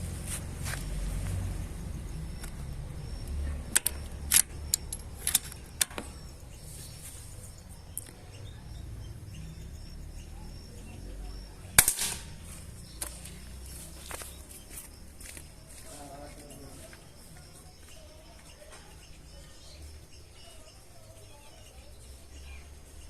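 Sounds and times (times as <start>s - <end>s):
sharp clicks and knocks: 2.3s - 6.4s
loud sharp crack: 11.8s - 12.6s.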